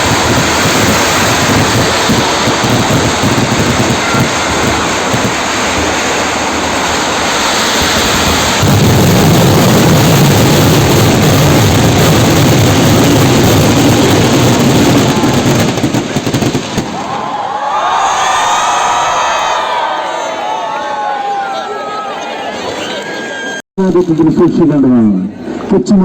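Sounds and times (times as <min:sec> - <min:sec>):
fireworks explosions: 0:00.0 - 0:17.3
crowd voices: 0:01.3 - 0:06.2, 0:17.0 - 0:23.6, 0:25.3 - 0:25.8.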